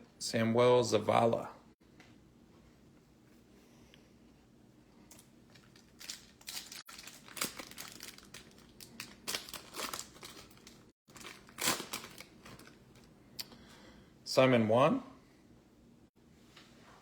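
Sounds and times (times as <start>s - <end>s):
foil wrapper crinkling and tearing: 5.1s - 13.1s.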